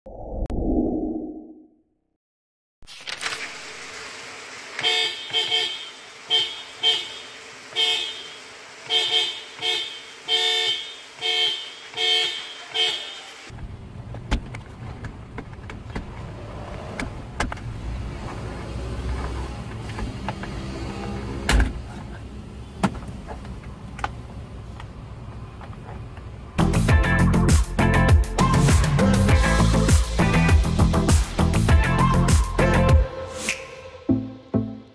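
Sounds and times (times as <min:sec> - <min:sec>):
car horn honks: 0:04.8 - 0:13.5.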